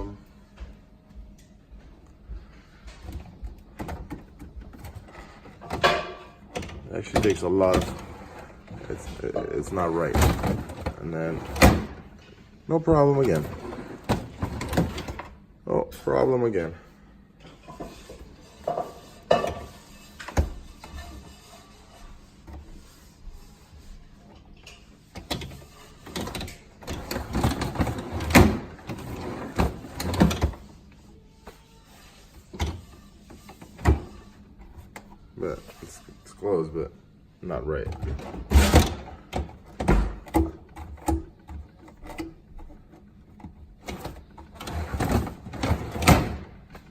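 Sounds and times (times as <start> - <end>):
refrigerator drawer sliding shut: 6.5 - 12.1, 13.0 - 15.3, 25.2 - 30.6, 37.9 - 41.1, 43.8 - 46.6.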